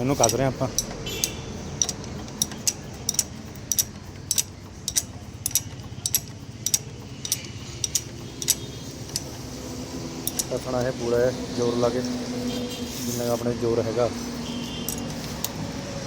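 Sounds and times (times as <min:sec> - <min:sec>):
wrench clicking: 0:00.0 - 0:11.0, 0:14.4 - 0:16.0.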